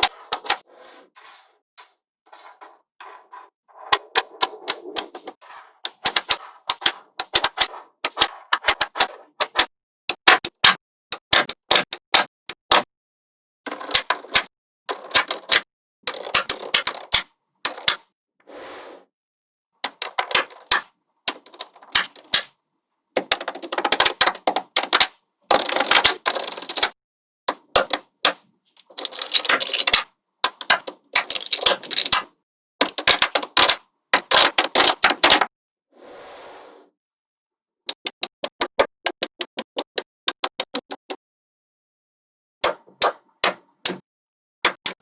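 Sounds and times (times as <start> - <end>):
magnetic balls clicking together: 5.9 - 12.8, 27.5 - 35.4, 37.9 - 41.2.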